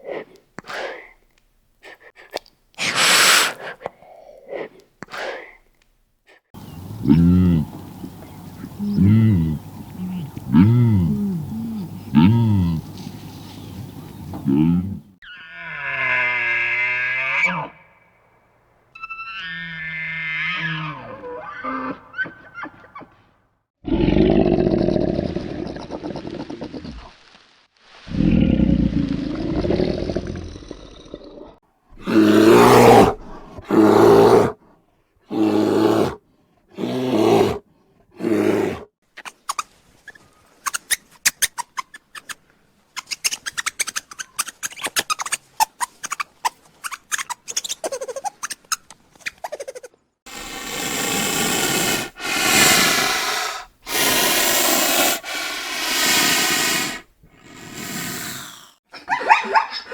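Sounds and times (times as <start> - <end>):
short animal calls: 2.8 - 3.8
breathy hiss: 2.8 - 5.6, 50.3 - 58.8
animal roars: 23.8 - 26.8, 28.0 - 34.6.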